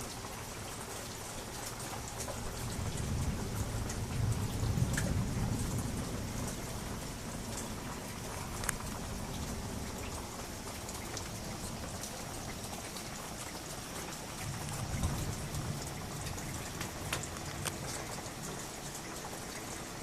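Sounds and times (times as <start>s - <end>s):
raindrops ticking close by: 0.0s - 20.0s
steady rain: 0.0s - 20.0s
low thunder rumble: 2.2s - 12.0s, 14.4s - 18.3s.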